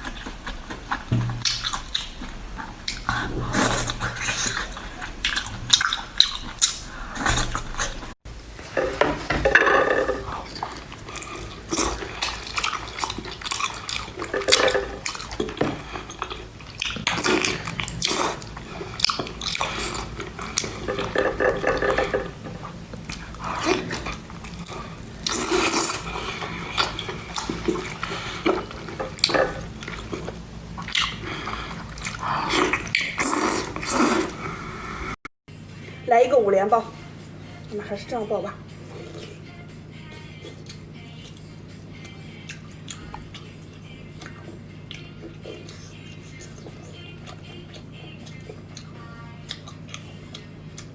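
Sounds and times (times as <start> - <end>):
dripping: 0.0 - 34.5
chewing and slurping: 0.0 - 35.2, 38.8 - 39.4, 40.4 - 50.9.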